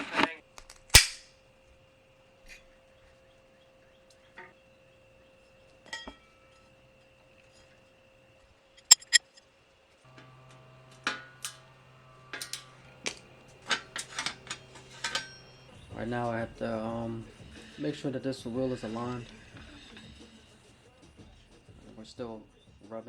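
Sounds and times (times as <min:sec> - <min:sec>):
metallic tool clicks and clinks: 0:00.6 - 0:01.2, 0:08.9 - 0:09.2
steady low hum: 0:10.1 - 0:21.5.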